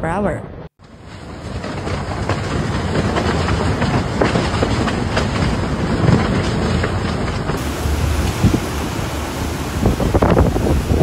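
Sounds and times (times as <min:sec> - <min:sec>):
strong wind blowing: 0:01.1 - 0:11.0
rapid knocks and rattles: 0:01.4 - 0:07.6.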